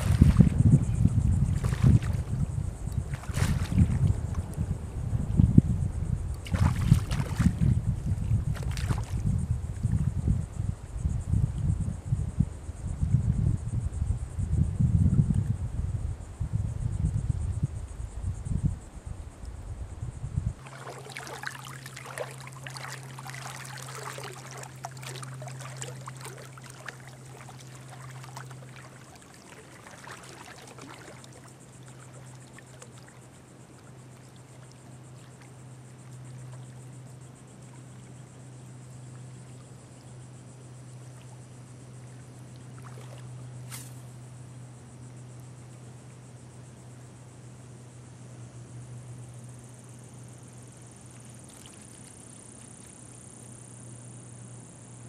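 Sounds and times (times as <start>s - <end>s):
water splashing and trickling: 0.0s - 4.6s, 6.4s - 10.1s, 20.6s - 36.9s, 42.6s - 44.0s, 51.1s - 53.0s
insects droning: 0.0s - 55.0s
steady low hum: 0.0s - 55.0s.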